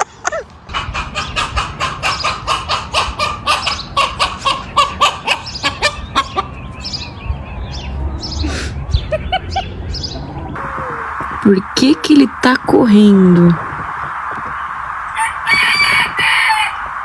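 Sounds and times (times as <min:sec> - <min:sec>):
chicken squawking: 0:00.0 - 0:06.8, 0:15.1 - 0:16.9.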